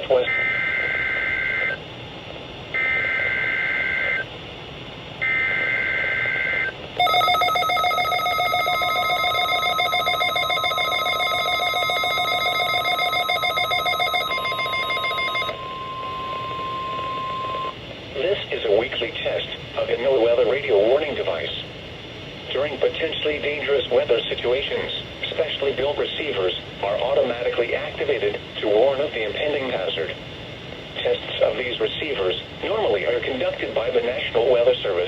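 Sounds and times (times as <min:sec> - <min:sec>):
steady warning alarm tone: 0:02.8 - 0:04.3, 0:05.2 - 0:17.8
pulsing electronic alarm: 0:05.2 - 0:17.8
shrill data warble: 0:05.2 - 0:17.8.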